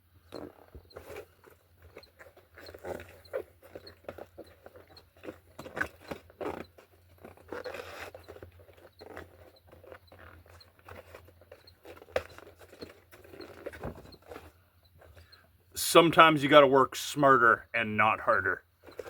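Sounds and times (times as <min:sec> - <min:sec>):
rubber tire scraping against rim: 0:00.2 - 0:15.4.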